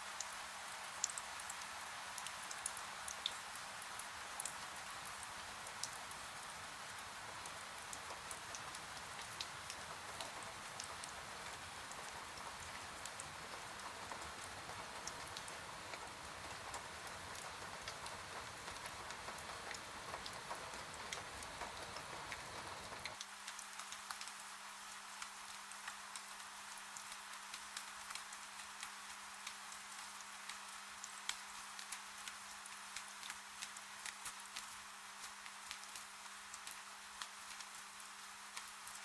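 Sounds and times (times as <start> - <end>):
raindrops ticking on glass: 2.2 - 24.2
faint steady hum: 4.8 - 23.2
rain hissing: 5.3 - 23.2.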